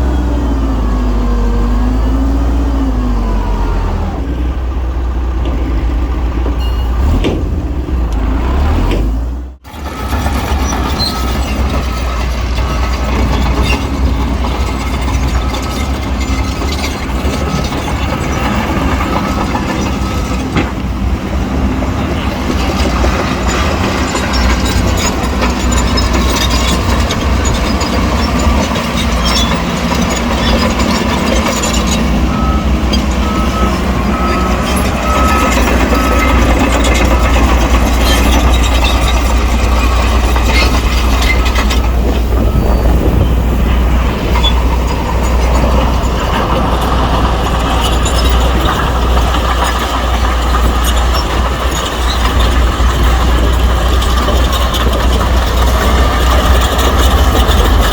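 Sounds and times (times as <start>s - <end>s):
heavy diesel machinery rumble: 0.0s - 57.9s
reversing alarm beeps: 6.6s - 7.2s, 9.8s - 12.8s, 30.9s - 37.5s, 41.3s - 43.4s.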